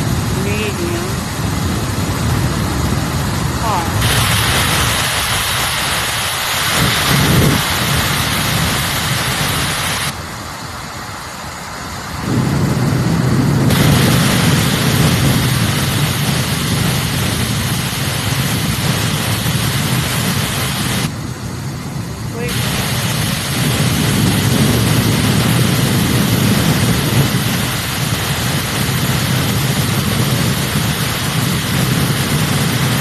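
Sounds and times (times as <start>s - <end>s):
hair dryer blowing: 3.6s - 10.1s, 13.7s - 21.1s, 22.4s - 33.0s.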